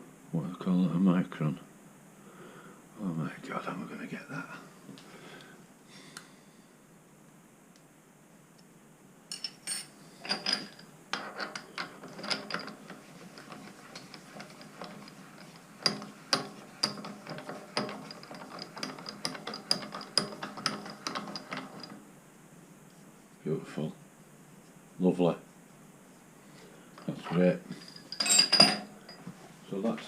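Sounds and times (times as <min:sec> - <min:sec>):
metallic clicking and ratcheting: 0:10.2 - 0:22.0.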